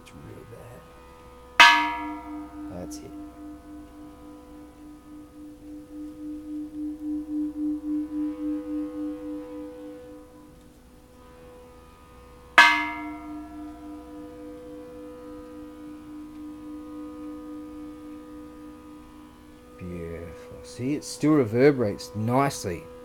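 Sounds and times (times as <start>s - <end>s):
temple bell ringing hum: 0.0s - 23.0s
bell struck with bright clang: 1.6s - 6.0s, 12.6s - 15.7s.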